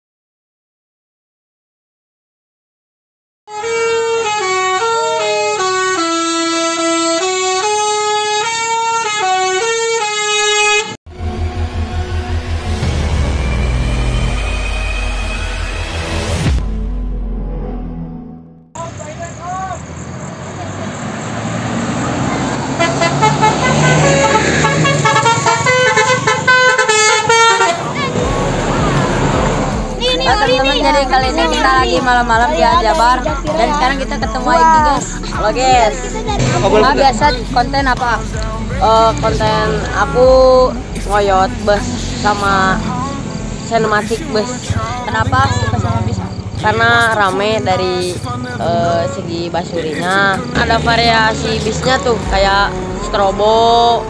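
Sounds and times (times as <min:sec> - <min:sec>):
multi-tone bus air horn tune: 0:03.5 - 0:12.2, 0:22.6 - 0:31.8, 0:32.6 - 0:40.8
bus engine hum: 0:18.8 - 0:54.0
low rumble: 0:28.1 - 0:42.2.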